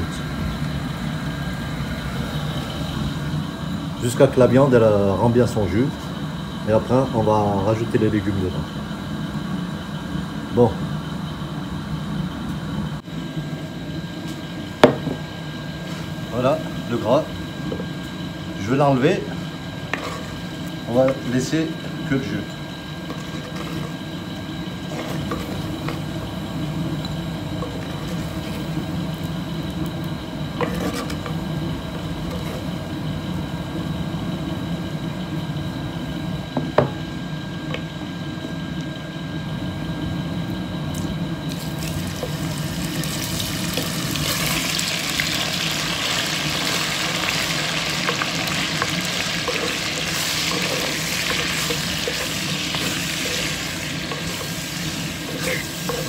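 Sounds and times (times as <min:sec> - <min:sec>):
meat sizzling: 0:41.5 - 0:56.0.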